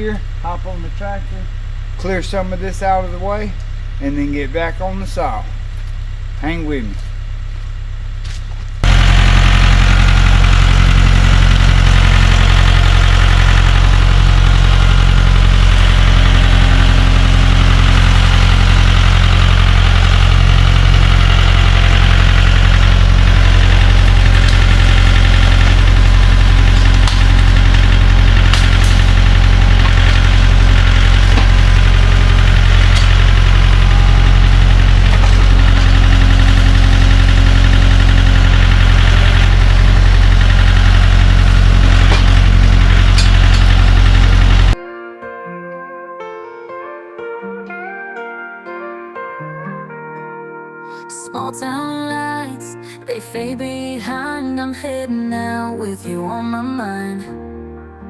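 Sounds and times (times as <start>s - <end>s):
tractor engine running: 0.0s - 44.8s.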